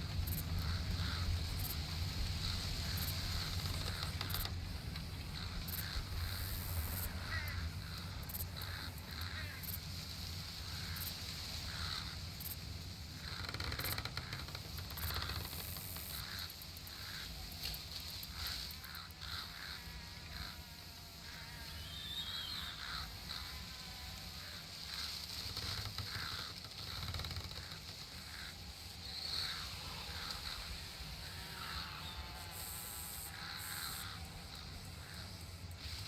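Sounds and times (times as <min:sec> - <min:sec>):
steady high hiss: 0:00.0 - 0:36.0
birds calling: 0:10.6 - 0:36.0.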